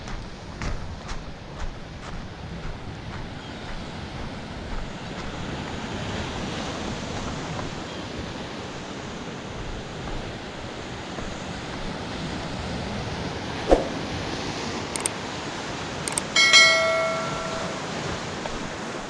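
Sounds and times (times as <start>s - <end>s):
waves on a rocky shore: 15.2s - 19.0s.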